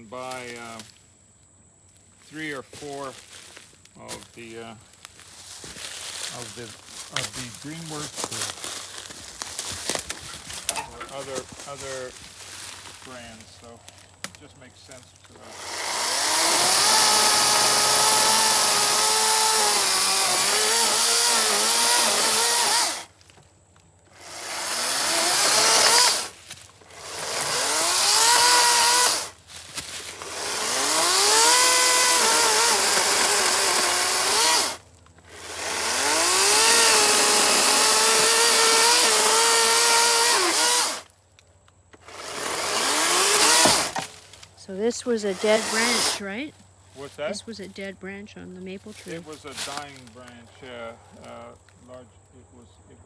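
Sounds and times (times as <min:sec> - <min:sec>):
electric chainsaw cutting wood: 0:15.3 - 0:23.2, 0:24.1 - 0:41.1, 0:42.0 - 0:46.5.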